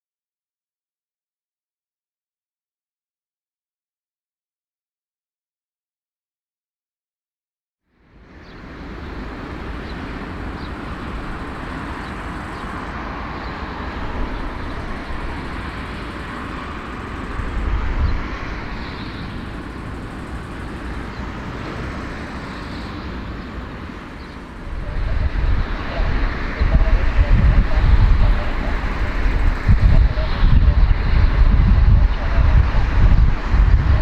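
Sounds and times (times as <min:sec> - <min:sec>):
jet engines roaring: 0:08.1 - 0:34.0.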